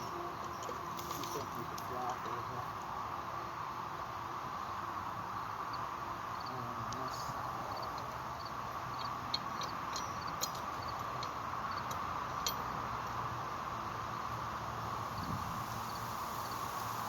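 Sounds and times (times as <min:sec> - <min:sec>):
steady background hiss: 0:00.0 - 0:17.0
metal parts clicking and tapping: 0:09.0 - 0:12.7.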